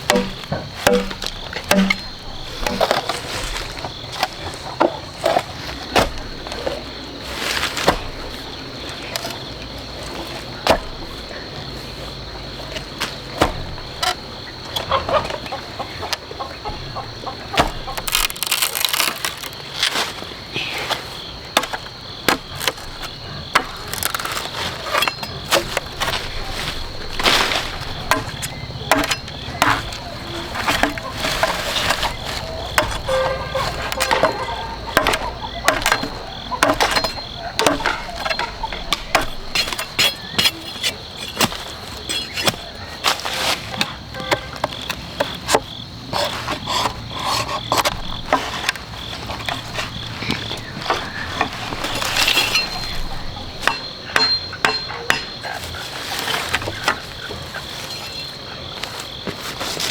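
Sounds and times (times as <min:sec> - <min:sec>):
sharp knocks: 0:00.0 - 0:06.6, 0:25.0 - 0:40.5, 0:49.5 - 0:55.4
high insect drone: 0:00.0 - 0:59.9
scraping rustles: 0:00.0 - 0:59.9.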